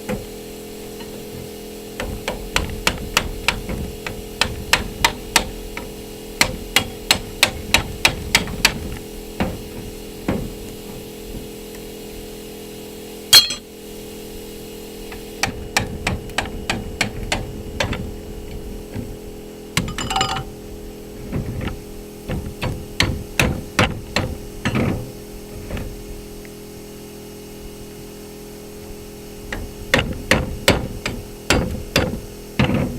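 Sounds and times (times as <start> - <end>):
steady hum: 13.2 - 14.4
hammer striking metal: 13.4 - 13.7, 19.8 - 20.5
loud ringing metal clang: 13.4 - 13.7, 19.8 - 20.5.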